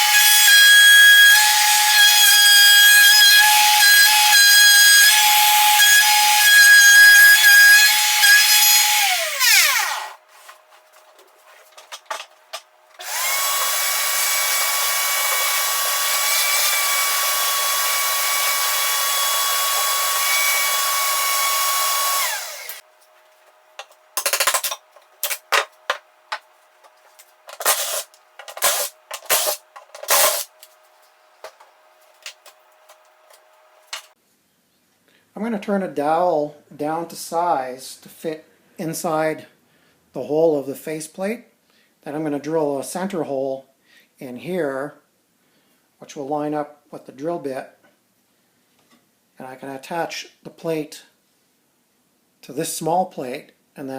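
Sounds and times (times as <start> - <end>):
power tool motor whining: 0.0 - 10.2, 13.0 - 22.8, 27.5 - 30.6.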